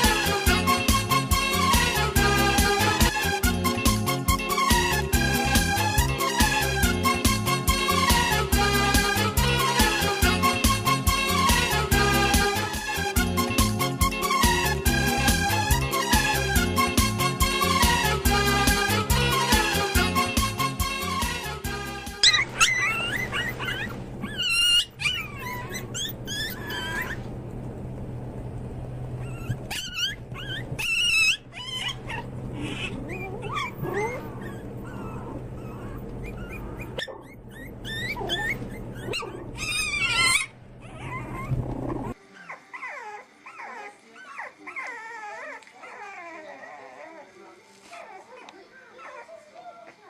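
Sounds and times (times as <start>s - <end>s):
dog whining and yipping: 22.2s - 27.2s, 29.2s - 49.9s.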